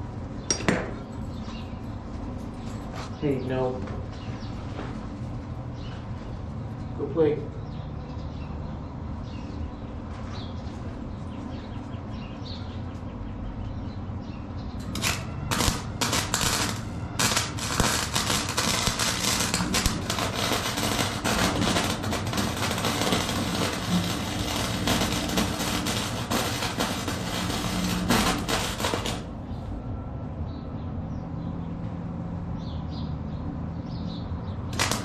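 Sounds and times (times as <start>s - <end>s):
steady low hum: 0.0s - 35.0s
welder arc crackling: 14.8s - 29.4s, 34.7s - 35.0s.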